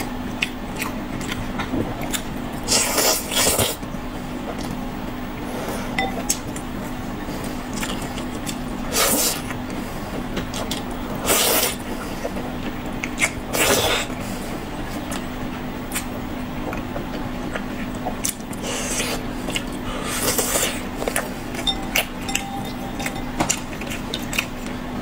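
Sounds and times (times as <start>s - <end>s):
low hum: 20.8s - 25.0s.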